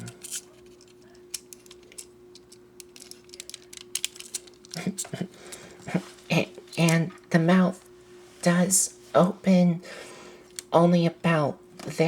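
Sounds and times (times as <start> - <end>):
plastic parts clicking and tapping: 0.0 - 5.0
faint steady hum: 0.0 - 12.0.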